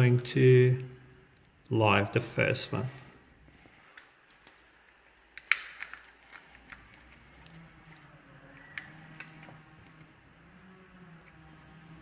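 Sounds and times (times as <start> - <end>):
wires clicking into terminals: 3.9 - 10.2.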